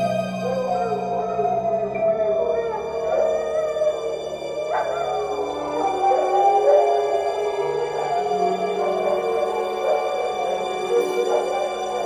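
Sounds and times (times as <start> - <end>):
spooky background music: 0.0 - 12.0.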